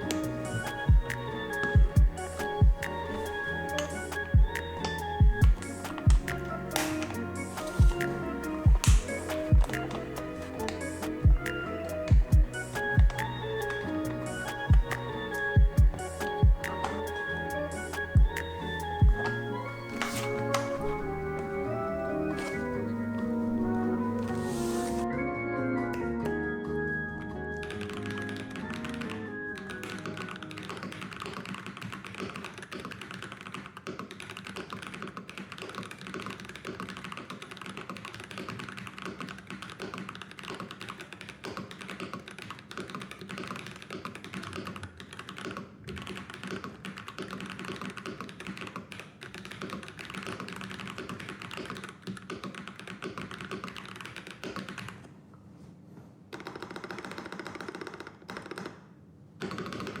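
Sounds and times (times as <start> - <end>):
mechanical keyboard typing: 27.6 - 55.1.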